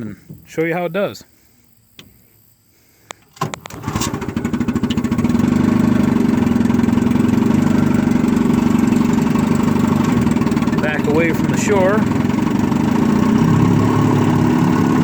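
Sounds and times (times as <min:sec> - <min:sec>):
outboard motor starting and running: 0:03.3 - 0:15.0.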